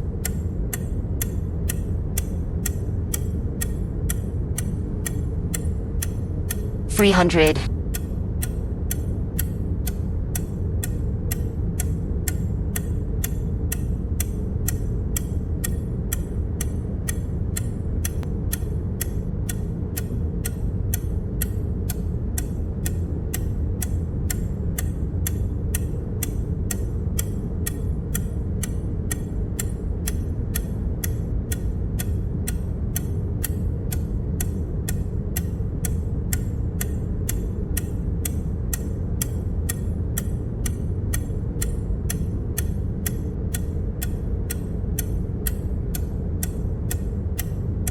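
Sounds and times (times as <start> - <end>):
sharp click sound effects: 6.9 - 8.1.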